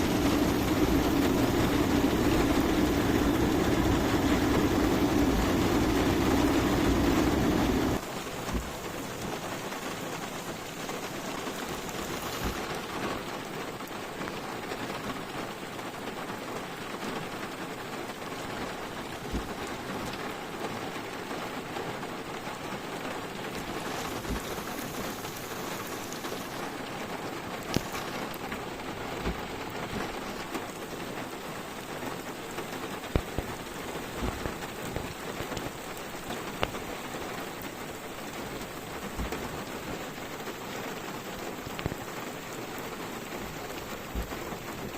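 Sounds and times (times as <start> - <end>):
loud low rumble: 0.0 - 8.0
raindrops ticking nearby: 0.0 - 44.9
steady rain: 0.0 - 44.9.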